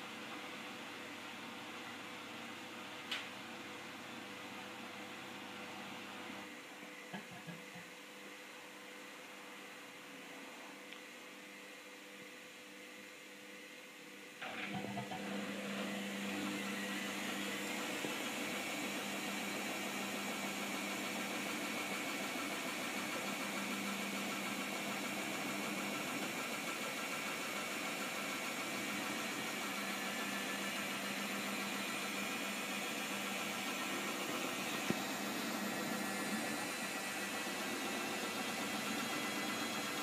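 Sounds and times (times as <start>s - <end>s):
washing machine spinning: 14.4s - 40.0s.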